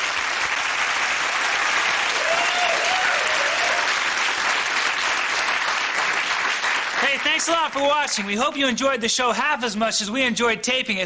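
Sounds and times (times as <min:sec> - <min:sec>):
audience applauding: 0:00.0 - 0:08.4.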